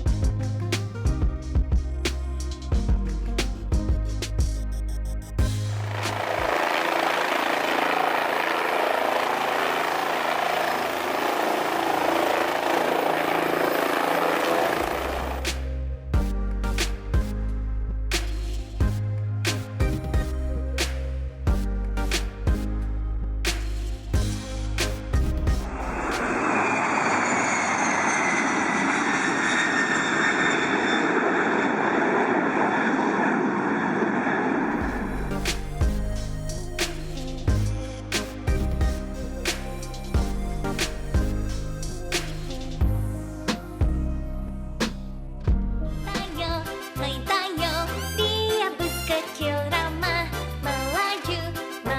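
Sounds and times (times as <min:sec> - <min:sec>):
aircraft rushing noise: 0:05.5 - 0:15.6, 0:24.8 - 0:35.6
jet engine whining: 0:05.8 - 0:15.5, 0:25.6 - 0:35.4.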